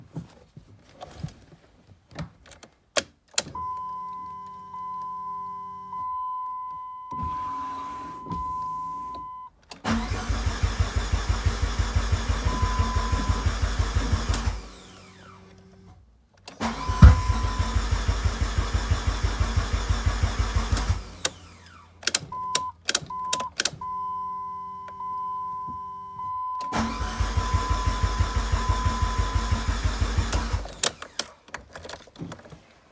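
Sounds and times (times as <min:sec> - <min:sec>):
car engine cranking: 0:09.8 - 0:15.9, 0:16.5 - 0:23.8, 0:26.6 - 0:32.5
engine backfire bang: 0:16.7 - 0:18.8.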